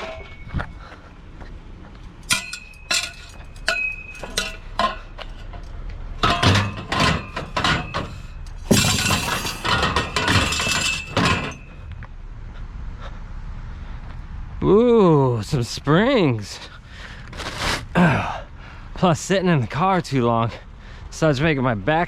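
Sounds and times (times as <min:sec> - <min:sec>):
clattering crash: 0:00.0 - 0:00.7, 0:02.3 - 0:12.0
hard junk clinking and clanking: 0:00.0 - 0:01.0, 0:02.2 - 0:12.0.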